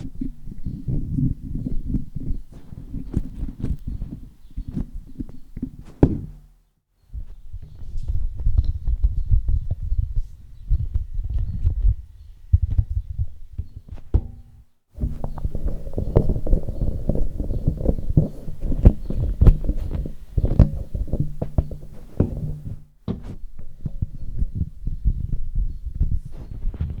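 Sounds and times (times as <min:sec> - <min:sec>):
microphone handling thumps: 0:00.0 - 0:06.6, 0:13.6 - 0:27.0.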